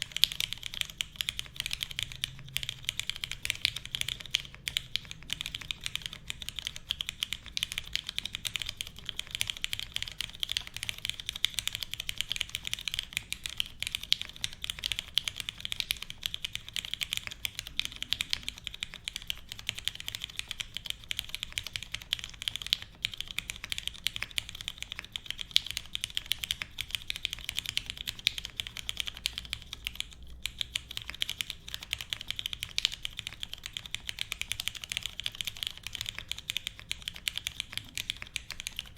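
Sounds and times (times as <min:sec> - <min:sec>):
fast mechanical keyboard typing: 0:00.0 - 0:38.9.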